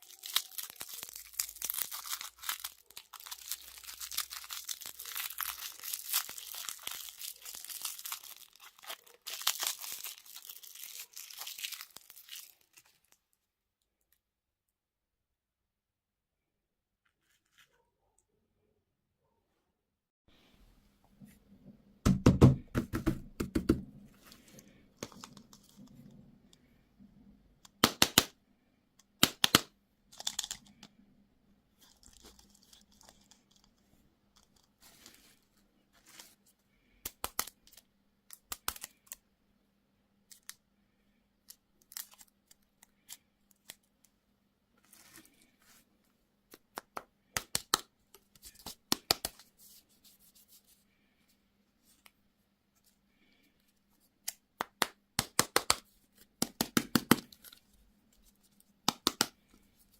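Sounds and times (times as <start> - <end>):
packaging crinkling: 0.0 - 13.2.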